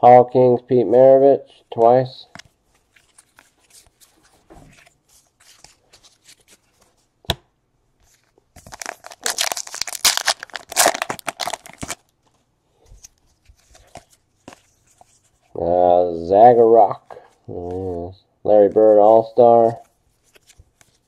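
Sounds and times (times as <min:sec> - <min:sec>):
card pack wrapper tearing: 0:08.6 - 0:12.1.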